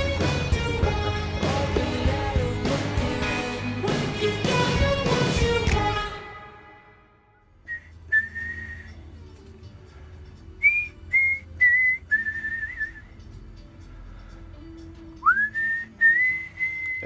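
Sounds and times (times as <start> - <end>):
person whistling a slow tune: 7.6 - 9.1, 10.5 - 13.3, 15.0 - 17.0.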